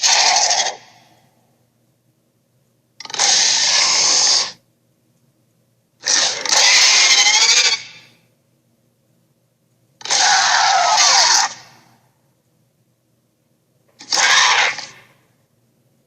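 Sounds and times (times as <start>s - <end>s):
cartoon dinosaur screeching: 0.0s - 1.0s, 3.0s - 4.6s, 6.0s - 8.2s, 10.0s - 11.8s, 14.0s - 15.1s.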